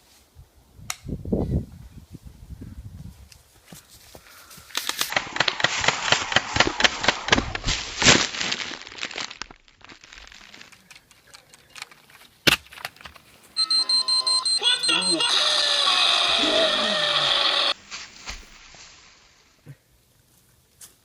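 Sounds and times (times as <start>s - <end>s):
crinkling crackling rustle: 7.7s - 14.4s.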